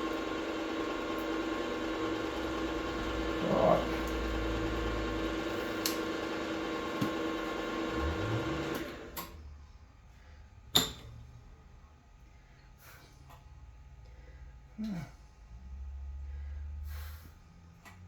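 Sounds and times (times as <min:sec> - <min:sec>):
electric motor humming: 0:00.0 - 0:09.2.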